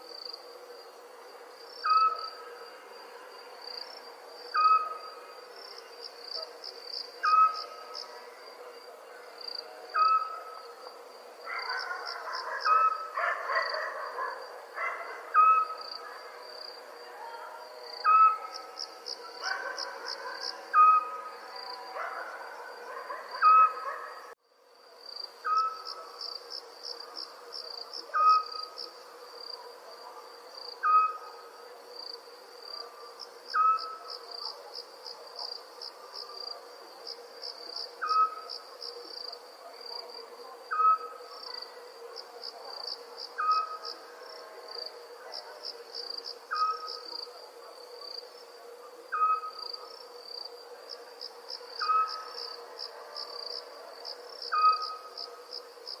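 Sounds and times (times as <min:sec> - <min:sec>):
crickets chirping: 0:00.0 - 0:56.0.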